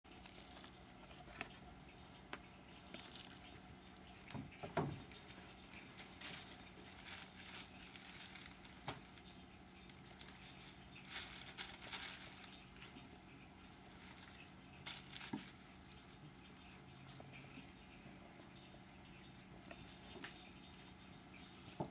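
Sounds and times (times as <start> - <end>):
cats scuffling and patting: 2.9 - 13.1, 14.0 - 16.1.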